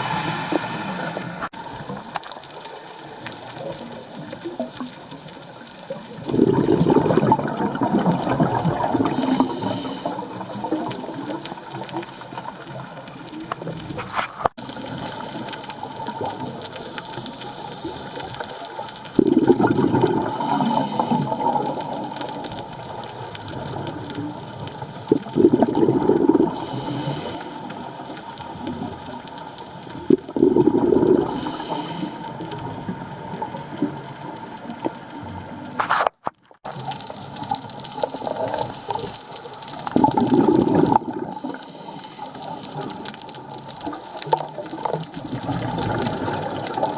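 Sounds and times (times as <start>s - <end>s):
regulator hissing inhalations: 0.0s - 1.5s, 9.0s - 11.6s, 16.8s - 18.4s, 20.2s - 21.5s, 26.5s - 28.8s, 31.2s - 32.4s, 37.9s - 39.3s, 41.3s - 43.0s
gurgling exhaled bubbles: 0.0s - 35.6s, 36.6s - 46.9s
underwater wash: 0.0s - 46.9s.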